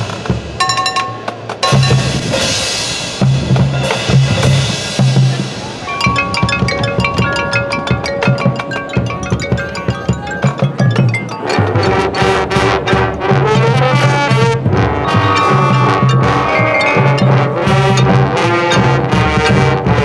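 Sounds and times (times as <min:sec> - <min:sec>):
drum hits: 0:00.0 - 0:20.0
marimba and bells: 0:00.6 - 0:02.7, 0:03.8 - 0:20.0
cymbal crashes: 0:14.9 - 0:18.9.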